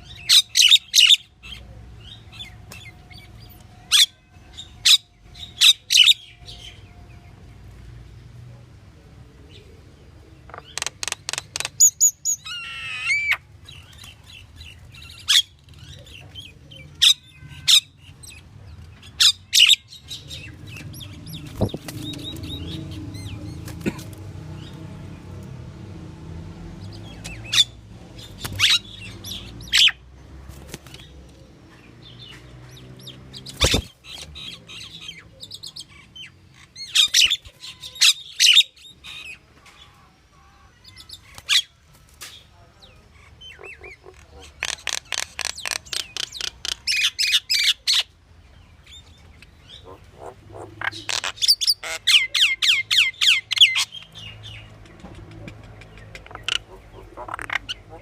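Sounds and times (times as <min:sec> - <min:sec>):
bird squawking and chirping: 0:00.0 - 0:06.9, 0:10.5 - 0:14.0, 0:14.6 - 0:23.6, 0:27.3 - 0:30.0, 0:33.0 - 0:41.8, 0:43.2 - 0:48.1, 0:49.4 - 0:58.0.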